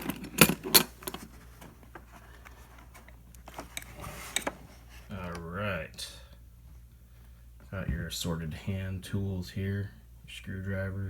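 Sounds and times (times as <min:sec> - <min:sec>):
tool case latches clicking: 0:00.0 - 0:01.3.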